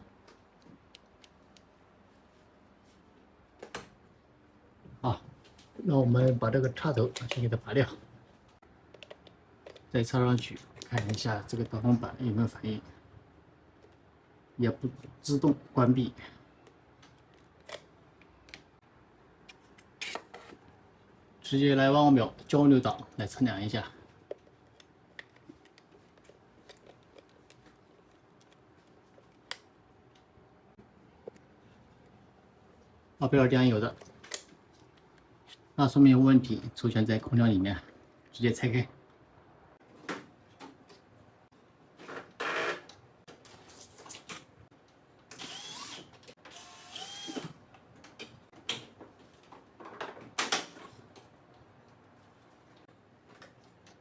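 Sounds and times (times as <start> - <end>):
multimeter probes clicking and tapping: 8.9 - 11.8
cordless screwdriver whirring: 45.4 - 47.5.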